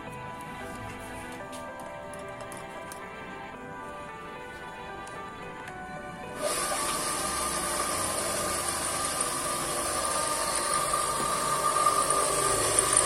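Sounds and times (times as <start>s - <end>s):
faint background music: 0.0s - 13.0s
electric motor humming: 6.3s - 13.0s.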